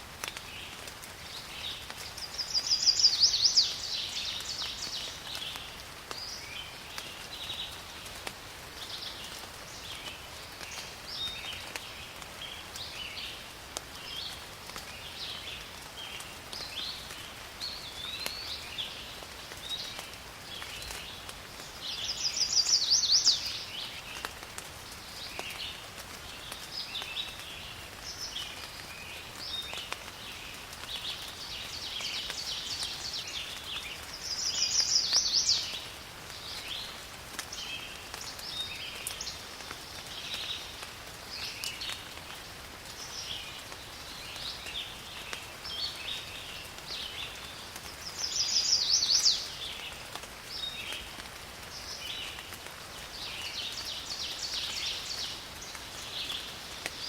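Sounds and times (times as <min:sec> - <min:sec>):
rain falling in a forest: 0:00.0 - 0:57.0
rapid bird song: 0:00.4 - 0:08.0, 0:08.8 - 0:13.4, 0:14.0 - 0:57.0
birds chirping and calling: 0:34.0 - 0:35.9.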